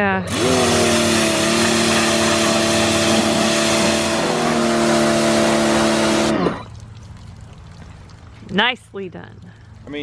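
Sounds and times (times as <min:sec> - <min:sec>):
pressure washer motor whine: 0:00.0 - 0:06.7.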